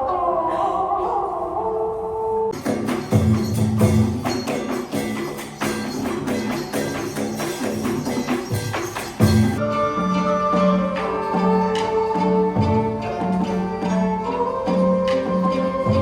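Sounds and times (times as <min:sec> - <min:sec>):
background music with steady beat: 0:02.5 - 0:16.0
shaking tambourine percussion: 0:02.6 - 0:09.6.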